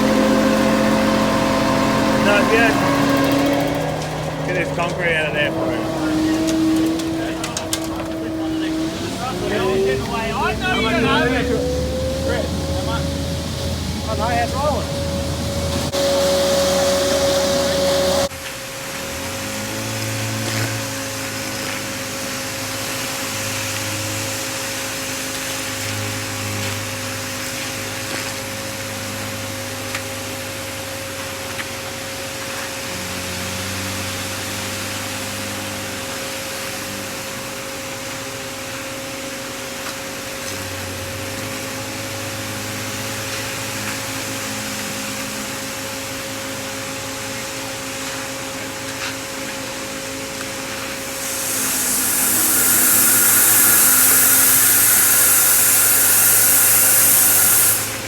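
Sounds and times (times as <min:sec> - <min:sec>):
steady whine: 0:00.0 - 0:18.3, 0:50.8 - 0:58.0
truck engine running: 0:00.0 - 0:18.4, 0:50.6 - 0:58.0
loud noise cutting off: 0:00.0 - 0:29.5, 0:50.4 - 0:58.0.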